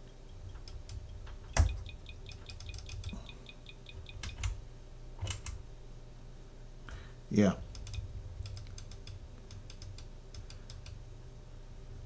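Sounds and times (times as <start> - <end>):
steady low hum: 0.0 - 12.0
sharp clicks: 1.6 - 4.6, 7.7 - 11.0.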